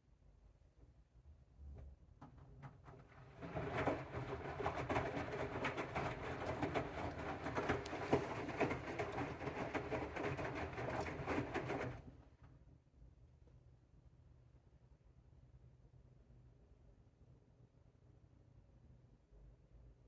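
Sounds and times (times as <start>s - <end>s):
washing machine drum clatter: 2.5s - 12.1s
washing machine motor hum: 2.8s - 12.4s.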